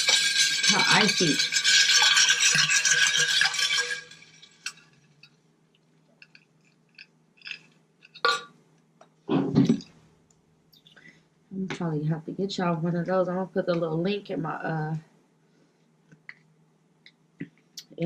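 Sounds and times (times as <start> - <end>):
ice cubes rattling in bottle: 0.0 - 5.3, 6.2 - 8.2.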